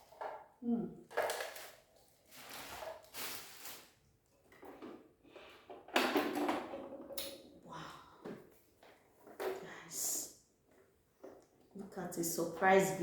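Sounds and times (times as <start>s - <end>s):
rustling and scraping handling: 1.1s - 7.2s.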